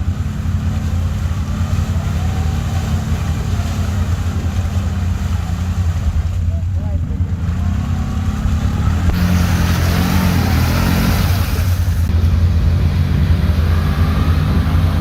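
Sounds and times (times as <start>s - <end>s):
engine running under load: 0.0s - 15.0s
rushing hiss: 9.1s - 12.1s.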